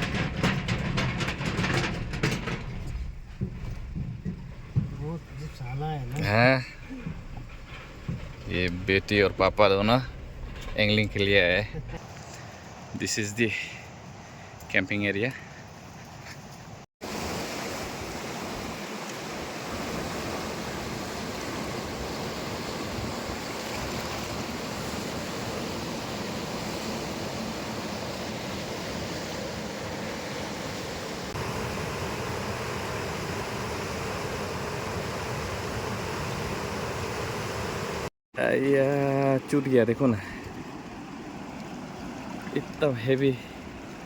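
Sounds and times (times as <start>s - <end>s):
river water rushing: 17.0s - 38.1s, 39.4s - 44.0s.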